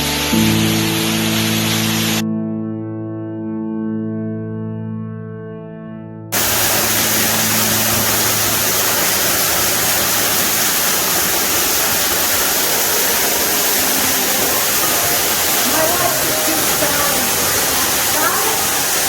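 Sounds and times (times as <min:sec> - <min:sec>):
waterfall rushing: 0:00.0 - 0:02.2, 0:06.4 - 0:19.0.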